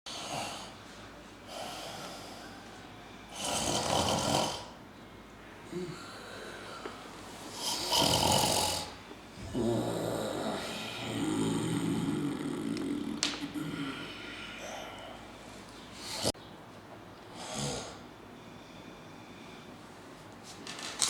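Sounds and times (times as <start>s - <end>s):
quiet breathing: 0.1s - 3.7s, 4.6s - 8.0s, 8.8s - 16.4s, 17.3s - 20.3s
man snoring: 3.3s - 4.8s, 7.6s - 14.8s.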